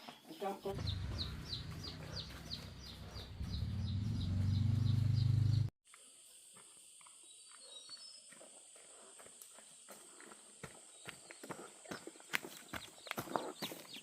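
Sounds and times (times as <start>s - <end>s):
chicks peeping: 0.8s - 5.2s
low rumble: 0.8s - 5.7s.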